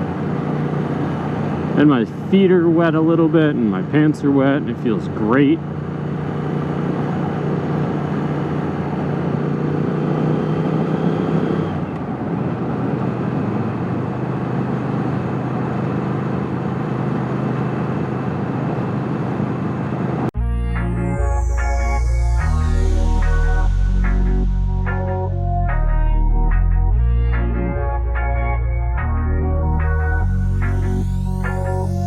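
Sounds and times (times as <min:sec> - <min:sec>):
music: 0:20.4 - 0:32.0.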